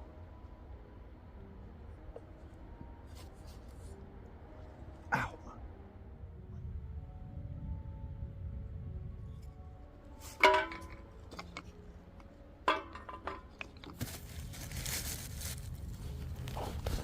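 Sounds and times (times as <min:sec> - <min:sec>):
rustling and crunching: 0:10.2 - 0:17.0
sharp ringing clanks: 0:10.4 - 0:11.6.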